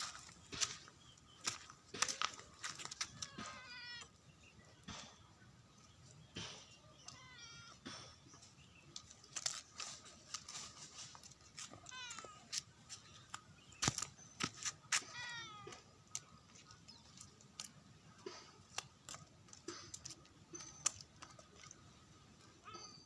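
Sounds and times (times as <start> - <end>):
cat meowing: 7.1 - 7.8, 15.0 - 15.7.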